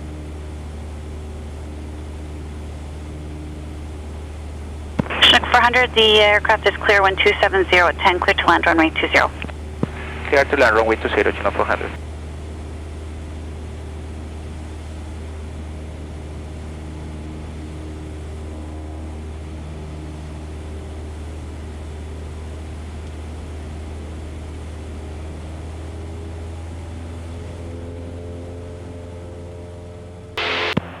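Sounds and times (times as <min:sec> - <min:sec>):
propeller plane engine droning: 0:00.0 - 0:31.0
faint steady tones: 0:05.0 - 0:13.5.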